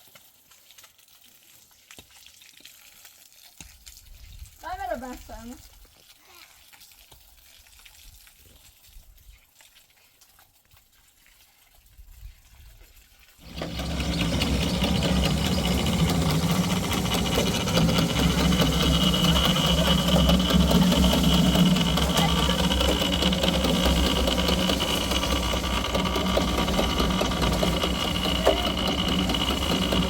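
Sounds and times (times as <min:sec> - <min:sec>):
motor running with whine: 0:13.4 - 0:30.0.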